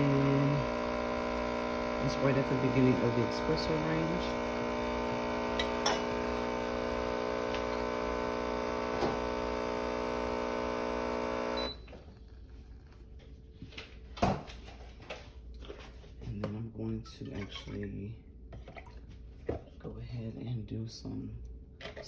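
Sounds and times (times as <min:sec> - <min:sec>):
espresso machine pump running: 0:00.0 - 0:12.9.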